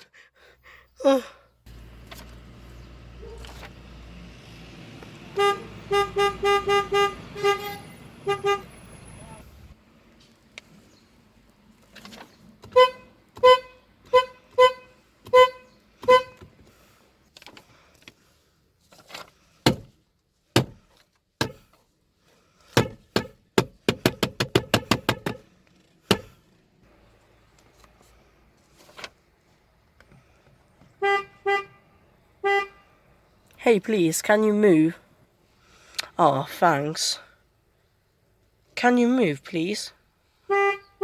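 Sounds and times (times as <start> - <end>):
car horn toots: 5.3 - 9.4, 12.6 - 16.5, 31.0 - 32.9, 40.5 - 41.0
sharp knocks: 19.7 - 19.9, 22.8 - 25.4, 26.1 - 26.3.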